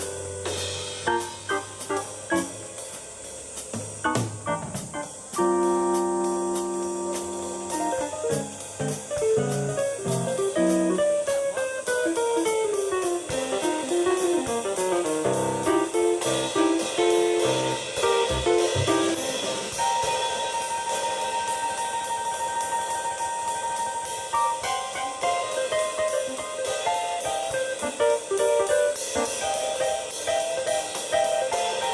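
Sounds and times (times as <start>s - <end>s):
electric keyboard playing: 0.0s - 2.8s, 4.1s - 20.1s
drum kit cymbal beat: 0.0s - 31.9s.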